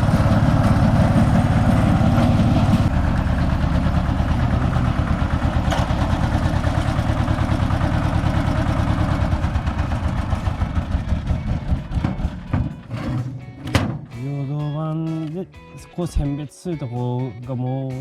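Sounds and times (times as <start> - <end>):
thresher knocking and rattling: 0.0 - 14.2.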